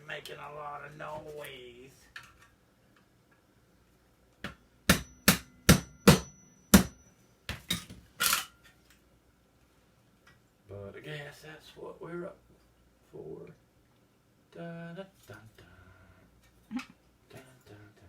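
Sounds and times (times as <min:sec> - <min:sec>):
hammer knocking on metal: 0:04.9 - 0:07.0
faint metallic ringing: 0:05.0 - 0:08.8.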